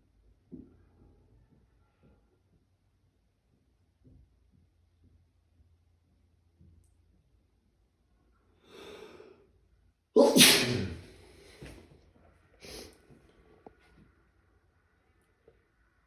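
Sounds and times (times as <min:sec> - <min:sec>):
person sneezing: 0:10.2 - 0:11.1
breath drawn in: 0:10.2 - 0:11.7.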